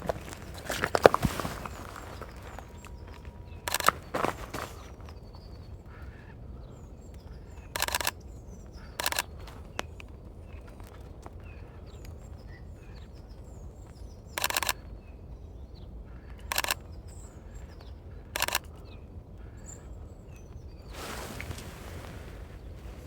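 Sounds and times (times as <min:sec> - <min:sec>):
rustling: 0:00.0 - 0:05.1, 0:20.9 - 0:23.0
faint bird chirps: 0:00.1 - 0:23.0
camera shutter clicks: 0:03.7 - 0:04.0, 0:07.8 - 0:08.2, 0:09.0 - 0:09.3, 0:14.4 - 0:14.8, 0:16.5 - 0:16.8, 0:18.4 - 0:18.7.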